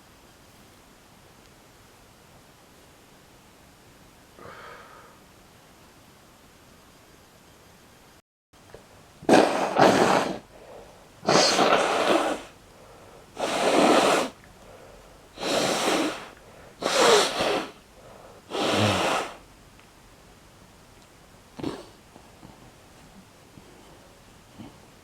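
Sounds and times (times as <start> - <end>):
person sneezing loudly: 9.3 - 10.5, 11.2 - 12.5, 13.4 - 14.4, 15.4 - 17.8, 18.5 - 19.4.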